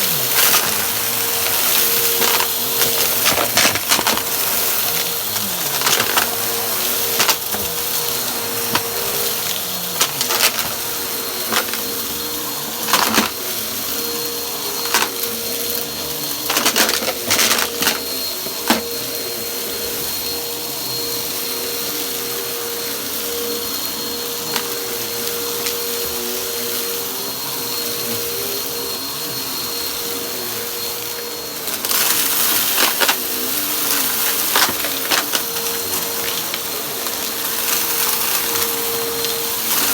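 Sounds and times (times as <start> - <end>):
debris crackling in vacuum: 0.0 - 19.2, 31.1 - 39.9
vacuum cleaner running: 0.0 - 39.9.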